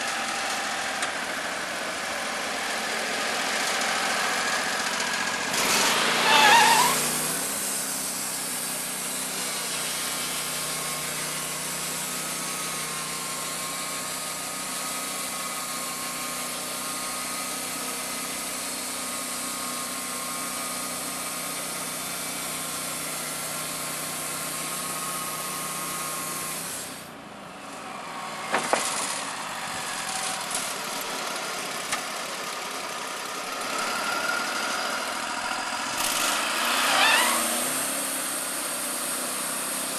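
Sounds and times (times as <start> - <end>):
band sawmill engine drone: 0.0 - 39.9.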